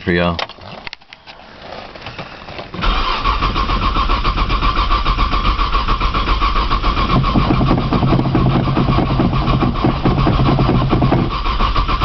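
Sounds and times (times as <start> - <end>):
starter motor cranking: 2.7 - 12.0.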